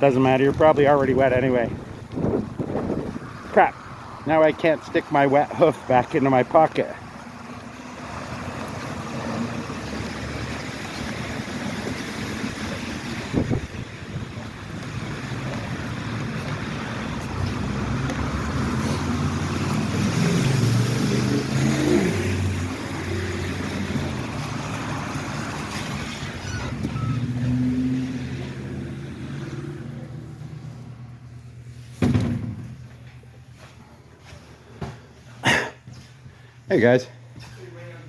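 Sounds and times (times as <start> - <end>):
vehicle engine and tyre hiss: 7.0 - 32.0.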